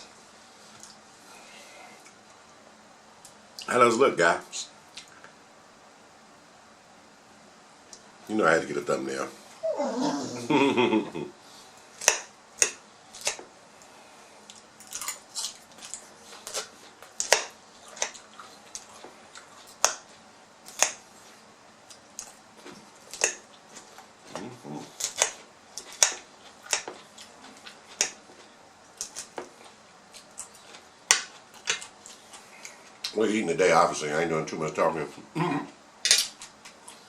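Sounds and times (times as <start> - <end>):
person chewing food: 14.4 - 21.2, 21.8 - 33.1.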